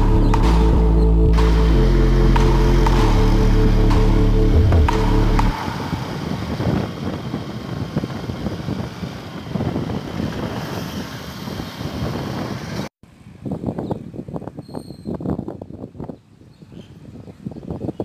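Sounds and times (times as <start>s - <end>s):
wind buffeting microphone: 4.6s - 18.0s.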